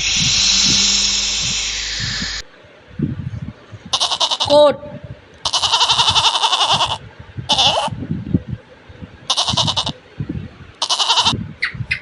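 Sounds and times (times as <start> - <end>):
goat bleating: 3.9 - 4.6, 5.4 - 7.9, 9.3 - 10.0, 10.8 - 11.4.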